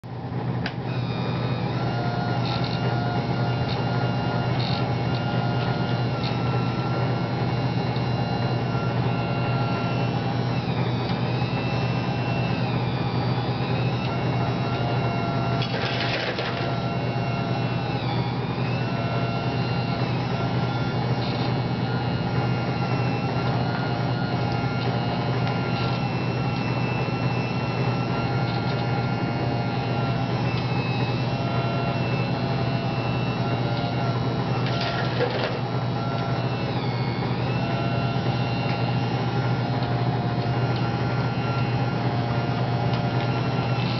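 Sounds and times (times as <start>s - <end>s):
small electric motors whirring: 0.6s - 43.9s.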